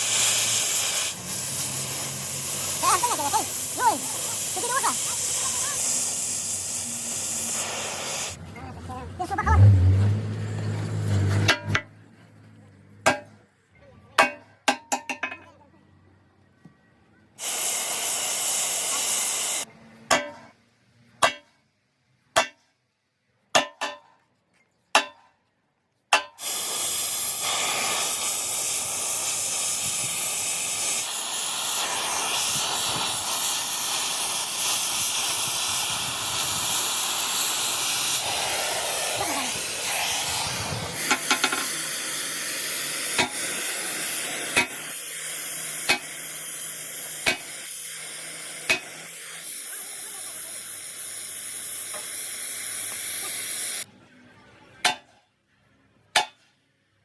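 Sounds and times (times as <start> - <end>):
arc welding crackling hiss: 0.0 - 8.4, 17.4 - 19.7, 26.4 - 53.9.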